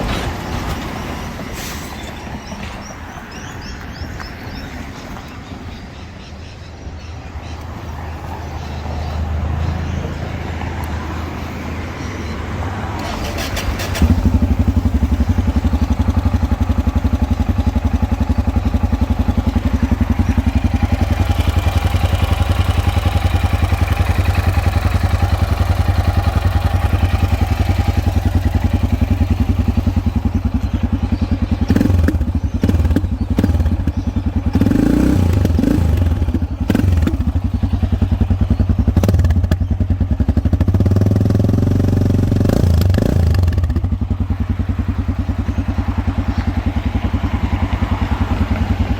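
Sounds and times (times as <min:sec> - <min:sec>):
motorcycle engine running: 0:13.0 - 0:48.9.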